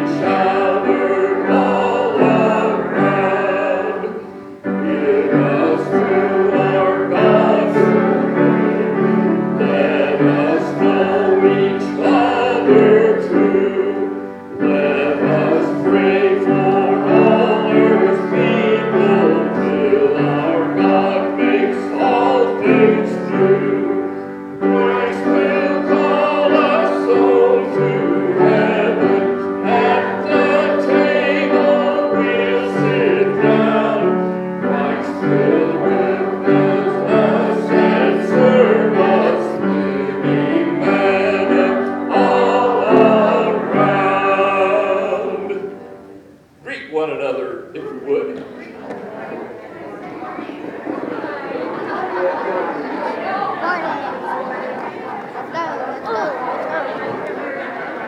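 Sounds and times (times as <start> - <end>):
group singing: 0.0 - 46.2
piano accompaniment: 0.0 - 46.5.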